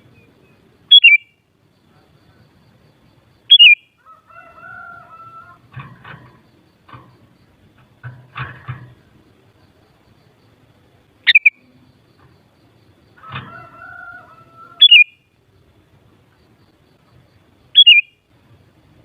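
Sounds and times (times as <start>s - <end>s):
bird held call: 0.9s - 1.3s, 3.5s - 3.8s, 11.3s - 11.7s, 14.4s - 15.2s, 17.8s - 18.1s
bird whistled phrases: 0.9s - 1.3s, 3.5s - 3.8s, 11.3s - 11.6s, 14.8s - 15.1s, 17.8s - 18.1s
scratchy bird calls: 13.2s - 15.1s.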